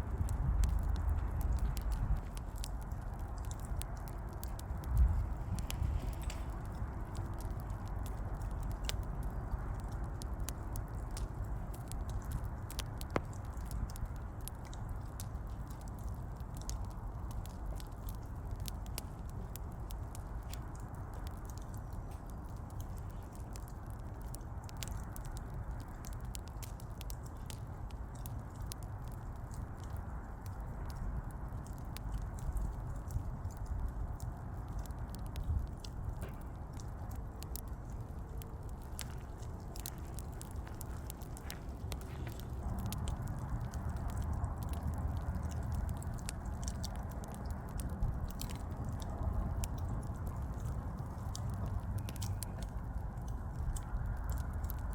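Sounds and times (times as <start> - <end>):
wood fire crackling: 0.0 - 54.9
logs popping and snapping: 0.1 - 30.0, 33.4 - 54.9.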